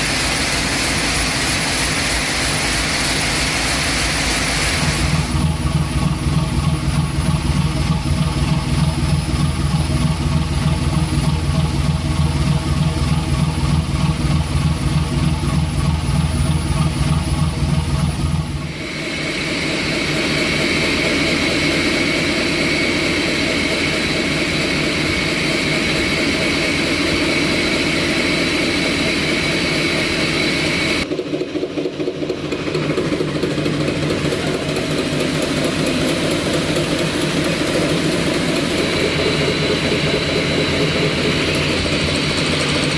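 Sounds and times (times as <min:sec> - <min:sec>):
engine with high-pitched whine: 0:00.0 - 0:42.9
deep pulsing engine rumble: 0:04.8 - 0:18.7.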